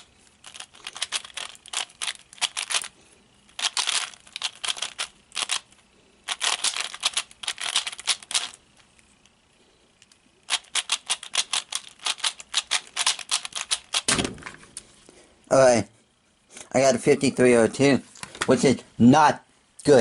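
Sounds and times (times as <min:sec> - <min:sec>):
puzzle cube plastic clicks: 0:00.0 - 0:02.9, 0:03.5 - 0:09.4, 0:10.0 - 0:14.2.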